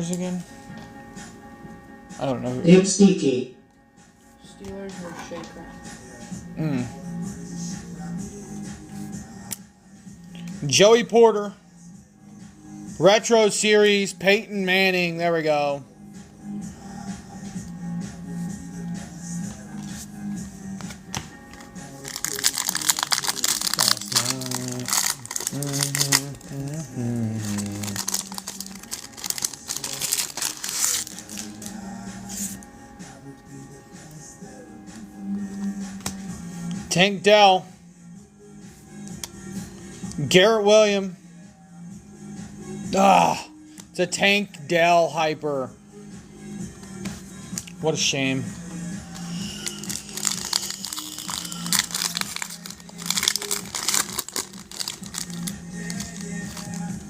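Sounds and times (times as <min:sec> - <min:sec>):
foil wrappers crinkling and tearing: 0:21.9 - 0:31.8, 0:49.2 - 0:56.9.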